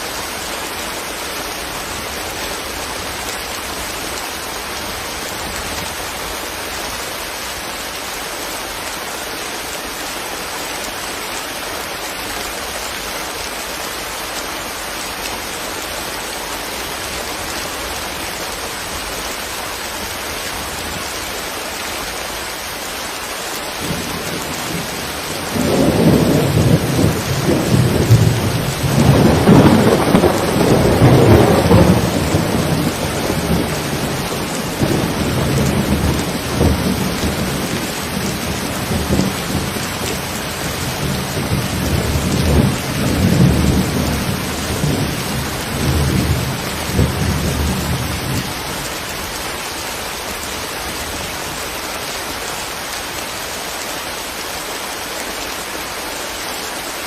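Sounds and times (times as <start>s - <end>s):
steady rain: 0.0s - 57.0s
thunder rumbling: 23.8s - 48.5s.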